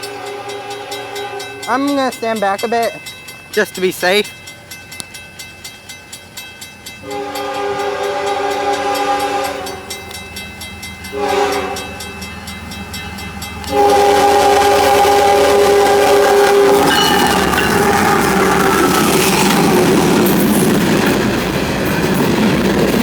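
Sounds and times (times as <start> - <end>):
moving train rumble: 0.0 - 23.0
locomotive air horn blasts: 7.0 - 10.1, 11.1 - 12.1, 13.6 - 18.6.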